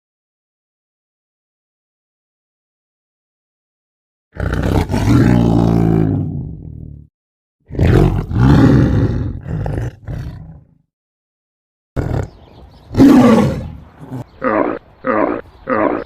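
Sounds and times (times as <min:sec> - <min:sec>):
deep animal calls: 0:12.0 - 0:16.0.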